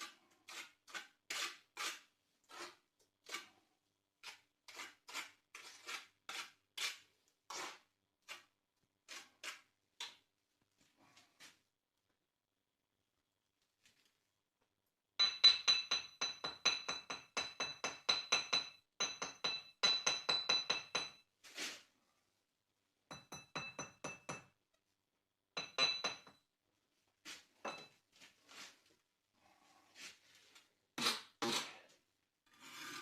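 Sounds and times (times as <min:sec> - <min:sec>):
trowel tapping on brick: 0:15.2 - 0:21.2.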